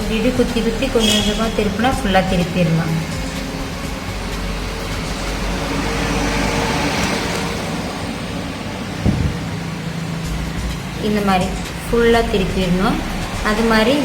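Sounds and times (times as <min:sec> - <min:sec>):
road vehicle passing by: 0:00.0 - 0:14.0
steady low hum: 0:09.0 - 0:14.0
single knock: 0:09.1 - 0:09.6.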